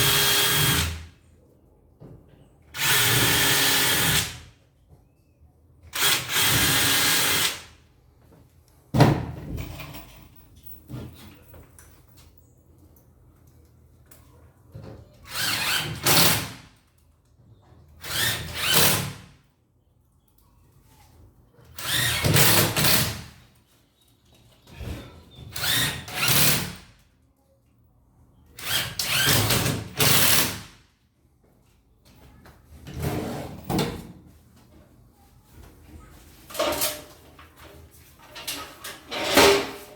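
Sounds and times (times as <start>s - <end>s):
drill-driver driving screws: 0.0s - 1.0s, 2.8s - 4.4s, 6.0s - 7.6s, 28.6s - 30.7s.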